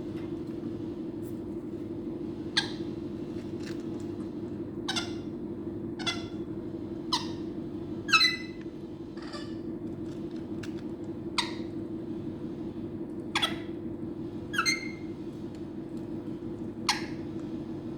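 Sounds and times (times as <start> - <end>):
bird squeaky calls: 8.1 - 8.6, 14.5 - 15.0.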